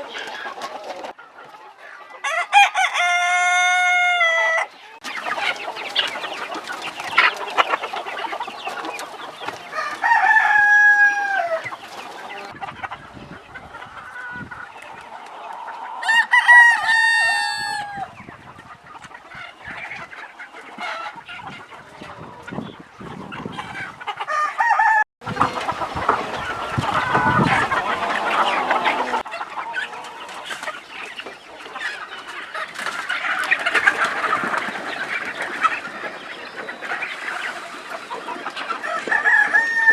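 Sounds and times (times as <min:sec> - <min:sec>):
chickens clucking: 0:00.0 - 0:39.9
rooster crowing: 0:02.2 - 0:04.7, 0:09.7 - 0:11.7, 0:16.0 - 0:18.1, 0:24.3 - 0:29.3, 0:39.1 - 0:39.9.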